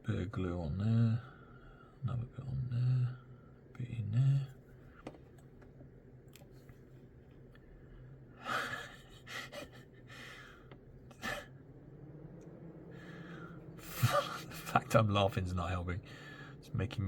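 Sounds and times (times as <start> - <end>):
faint low hum: 0.0 - 17.0
man's stifled laughter: 8.4 - 11.7, 13.8 - 14.9.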